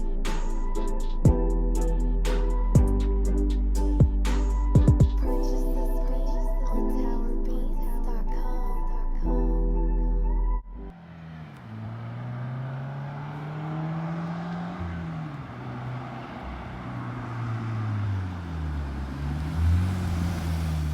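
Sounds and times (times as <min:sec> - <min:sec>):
car engine revving: 0:10.9 - 0:20.9.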